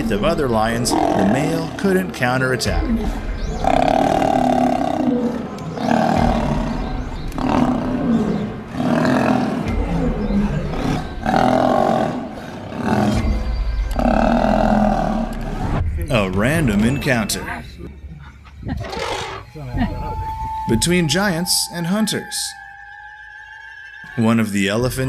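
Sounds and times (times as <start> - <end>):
lions snarling and growling: 0.8 - 15.8, 18.2 - 19.6.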